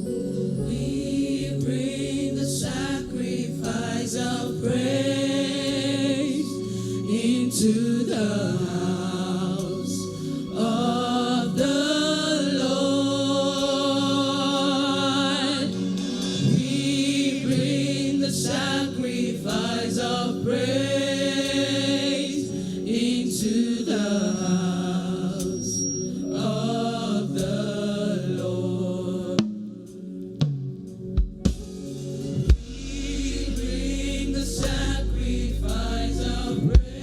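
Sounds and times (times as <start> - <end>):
sustained low chords: 0.0 - 11.8, 32.2 - 37.0
worship singing: 0.0 - 30.4, 32.0 - 37.0.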